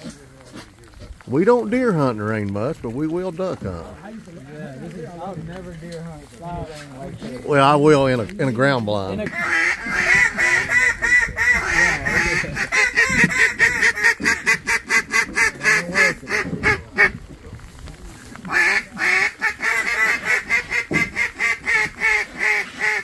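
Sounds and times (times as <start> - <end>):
waterfowl quacking and honking: 9.1 - 17.3, 18.4 - 23.0.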